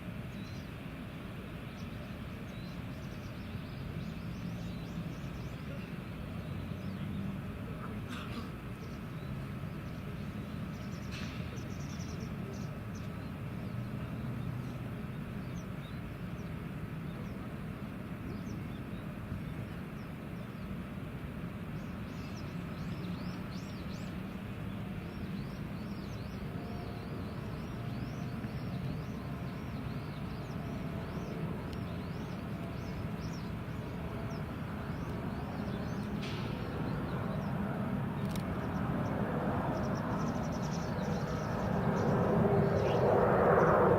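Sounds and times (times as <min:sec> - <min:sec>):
low outdoor rumble: 0:00.0 - 0:43.9
small birds chirping: 0:01.6 - 0:17.6, 0:21.7 - 0:43.9.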